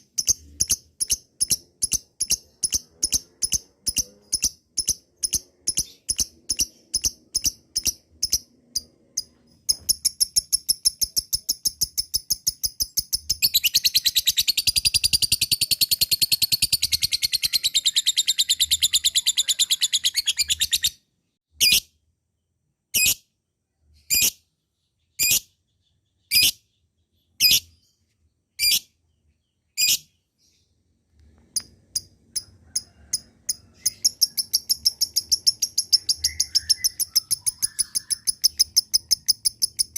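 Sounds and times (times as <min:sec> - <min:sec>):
bird rapid chattering chirps: 0:00.0 - 0:21.0, 0:31.9 - 0:39.9.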